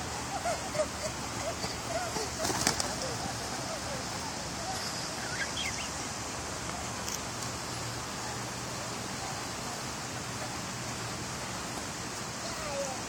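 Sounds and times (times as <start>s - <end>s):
creek water flowing: 0.0s - 13.0s
faint bird chirps: 4.6s - 6.1s.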